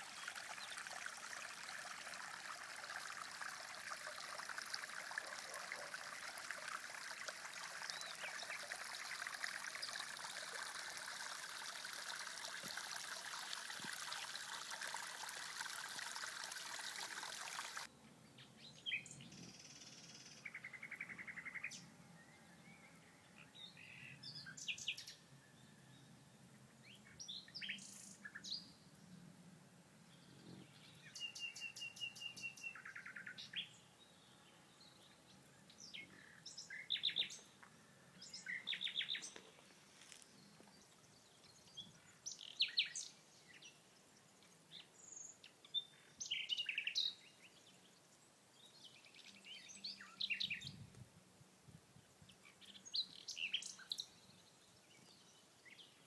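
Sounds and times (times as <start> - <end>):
songbirds chirping and trilling: 30.0 - 50.8, 52.0 - 56.0.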